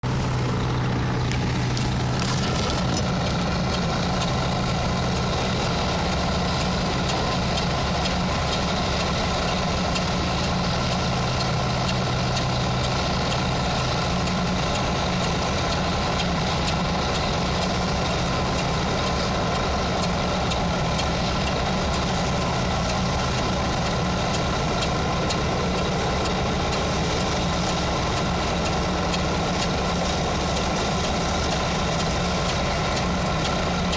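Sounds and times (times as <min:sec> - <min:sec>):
low engine-like hum: 0:00.0 - 0:33.9
welding arc crackle and hiss: 0:00.1 - 0:02.9.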